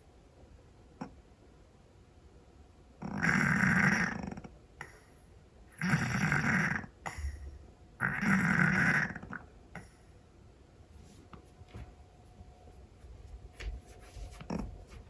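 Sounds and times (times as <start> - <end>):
cat snoring: 3.0 - 4.5, 5.8 - 7.0, 8.0 - 9.9.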